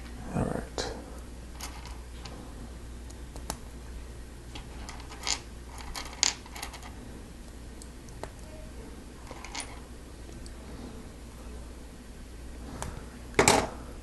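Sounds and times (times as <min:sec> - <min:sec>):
plastic pieces clicking and rattling: 0:04.8 - 0:06.9.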